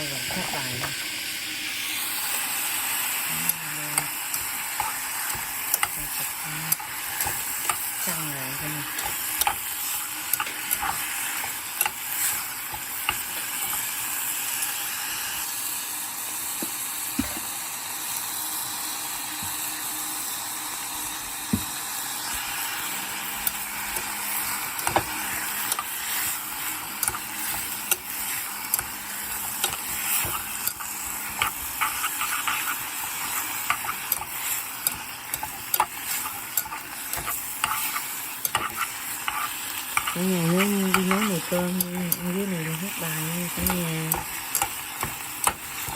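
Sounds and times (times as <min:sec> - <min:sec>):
meat sizzling in hot oil: 0:00.0 - 0:45.9
utensil scraping and clicking in pan: 0:03.4 - 0:14.8, 0:23.4 - 0:45.9.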